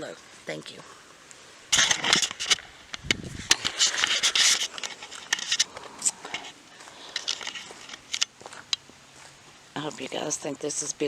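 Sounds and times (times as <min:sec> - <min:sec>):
scraping and scratching: 0:01.7 - 0:08.8.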